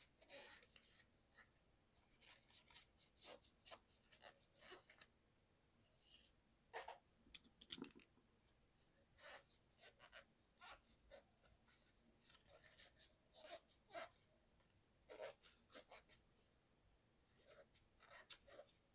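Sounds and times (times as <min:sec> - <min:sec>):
scratching and rubbing on keyboard: 0:02.1 - 0:05.1, 0:09.2 - 0:14.2, 0:15.1 - 0:16.2, 0:17.3 - 0:18.9.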